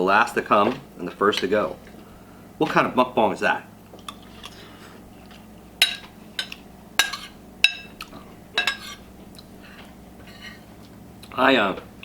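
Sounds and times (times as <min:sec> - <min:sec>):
cutlery clinking on plate: 0:08.6 - 0:09.0.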